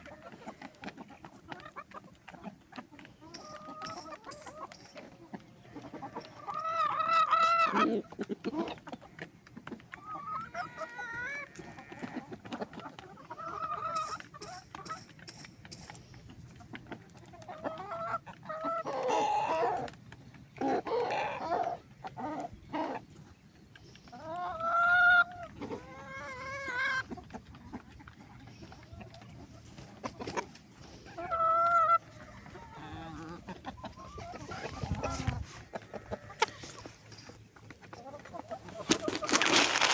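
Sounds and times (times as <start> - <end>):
chickens clucking and calling: 0.0 - 39.9.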